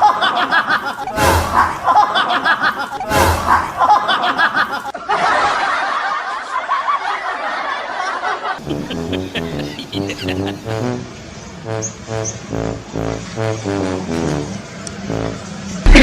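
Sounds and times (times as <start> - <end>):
snickering laugh: 0.0 - 10.7
dense laughing: 0.0 - 11.1.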